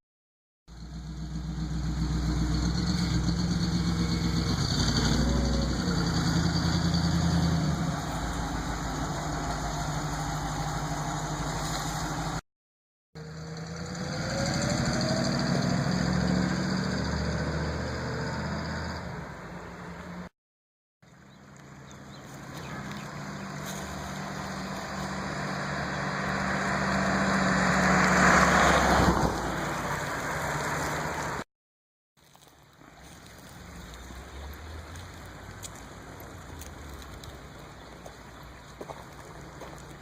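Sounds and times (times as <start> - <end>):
truck driving past: 0.7 - 12.4, 13.2 - 20.3, 21.2 - 31.4.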